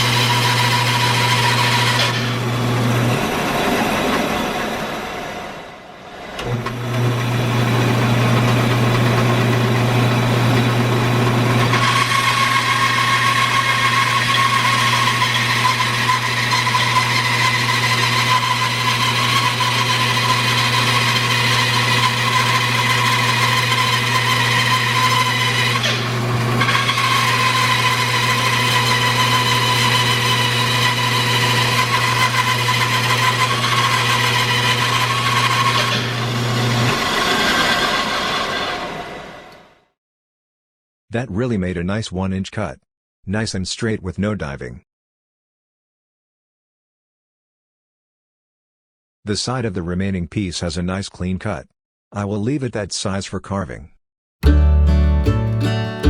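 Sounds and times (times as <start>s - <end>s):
bandsaw motor hum: 0.0s - 39.7s
saw blade whine cutting log: 0.0s - 39.7s.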